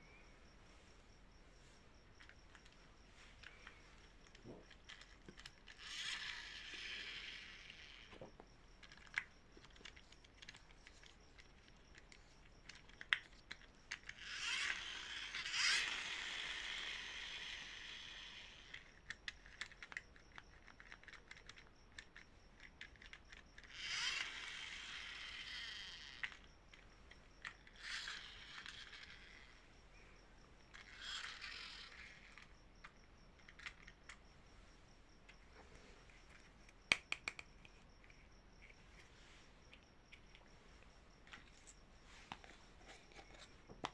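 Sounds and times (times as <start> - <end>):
small clicks and taps: 8.1 - 14.2, 18.7 - 23.7, 36.0 - 39.0, 39.7 - 43.9.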